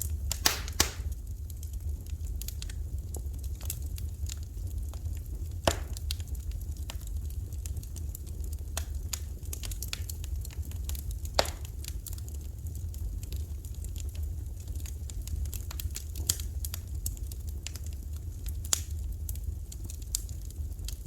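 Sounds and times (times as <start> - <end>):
wood fire crackling: 0.0 - 21.0.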